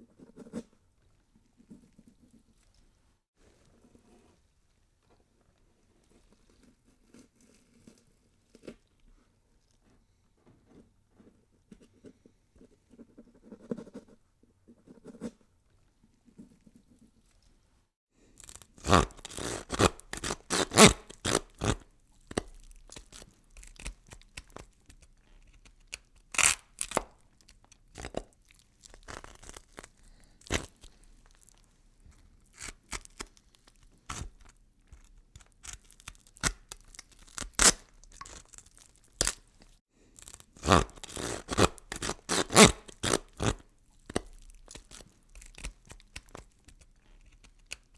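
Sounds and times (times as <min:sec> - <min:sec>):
gory tearing and crunching: 0:18.4 - 0:31.7, 0:32.4 - 0:47.9.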